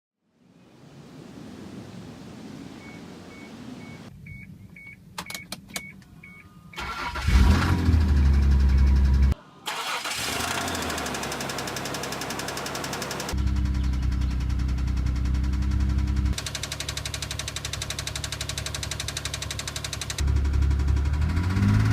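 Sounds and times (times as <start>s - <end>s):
engine cranking and starting: 6.8s - 21.9s
engine running with knock: 10.9s - 21.9s.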